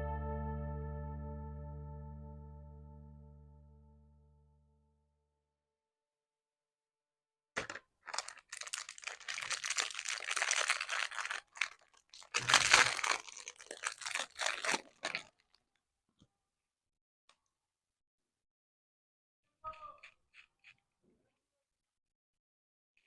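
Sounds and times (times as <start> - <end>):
plastic packaging crinkling: 7.6 - 15.6.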